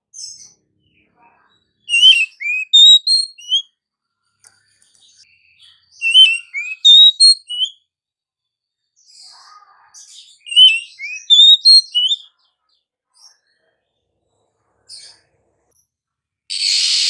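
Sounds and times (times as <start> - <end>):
bird singing whistled notes: 1.8 - 3.7, 5.2 - 7.8, 10.3 - 12.3, 16.5 - 17.0.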